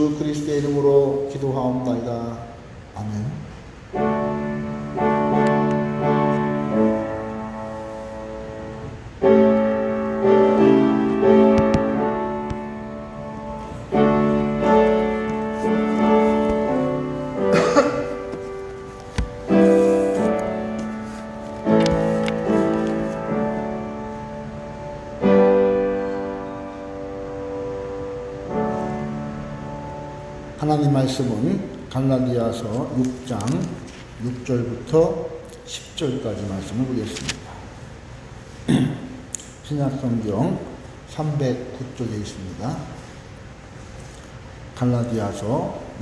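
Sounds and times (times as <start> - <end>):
piano playing slow chords: 0.0 - 33.3.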